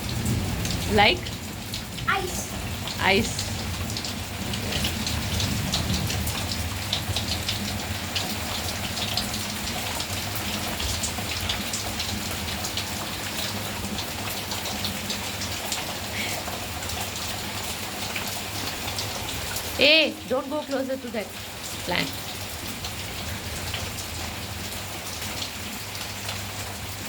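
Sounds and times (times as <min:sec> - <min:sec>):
raindrops hitting surfaces: 0:00.0 - 0:27.0
steady rain falling: 0:00.0 - 0:27.0.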